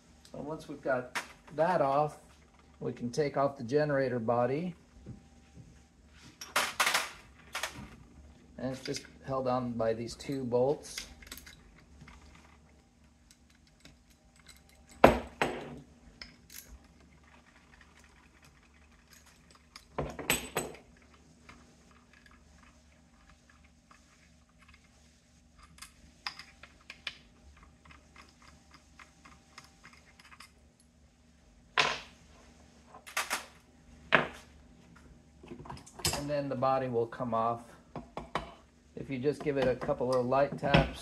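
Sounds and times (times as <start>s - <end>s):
metal tools clinking: 13.6s - 15.1s.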